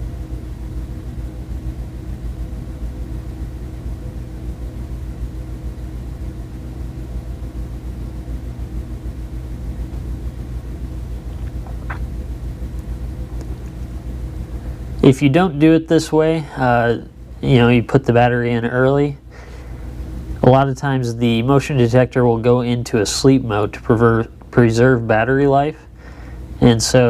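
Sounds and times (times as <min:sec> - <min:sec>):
faint rumble: 0:00.0 - 0:17.5.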